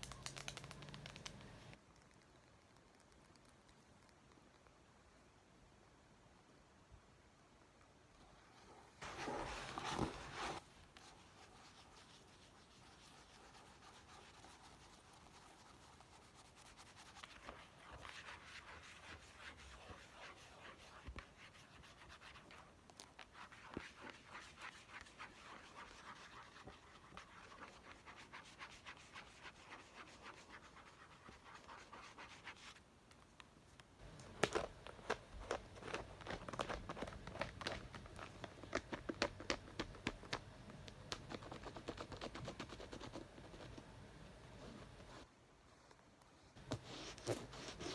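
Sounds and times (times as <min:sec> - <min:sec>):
scratching on a book: 0:09.0 - 0:32.8, 0:34.0 - 0:40.4, 0:41.0 - 0:43.9, 0:46.6 - 0:47.9.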